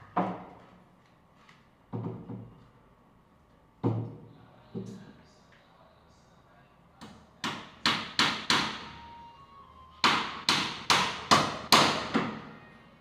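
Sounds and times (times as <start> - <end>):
hammer strikes: 7.4 - 8.9, 10.0 - 12.4.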